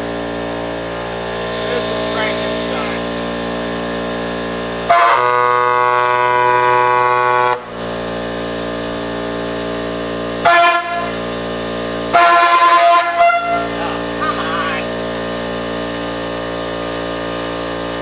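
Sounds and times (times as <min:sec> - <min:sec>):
engine-like hum: 0:00.0 - 0:18.0
air horn blast: 0:04.8 - 0:07.8, 0:10.4 - 0:11.4, 0:12.1 - 0:14.9.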